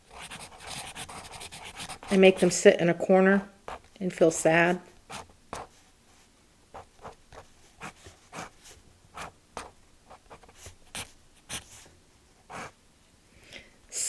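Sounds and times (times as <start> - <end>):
pencil strokes on paper: 0.1 - 2.6, 4.6 - 11.9, 12.5 - 12.8.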